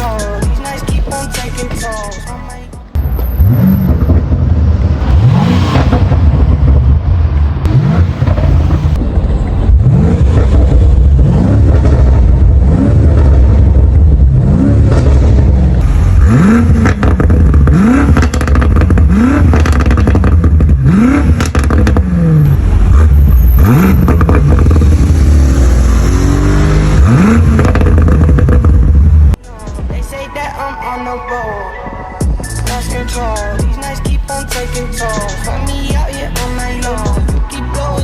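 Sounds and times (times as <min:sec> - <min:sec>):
car engine revving: 0:03.0 - 0:29.4
exhaust crackles and pops: 0:03.0 - 0:29.4.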